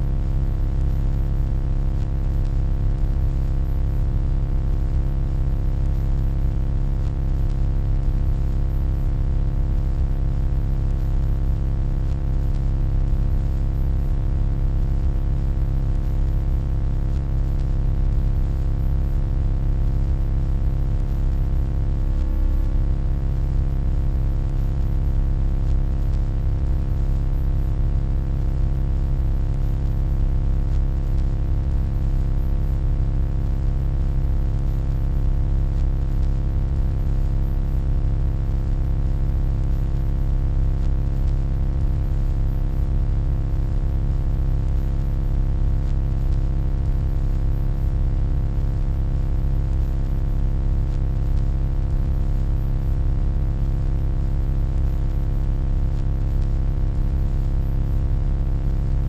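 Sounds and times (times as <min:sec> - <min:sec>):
deep electronic hum: 0:18.1 - 0:27.4.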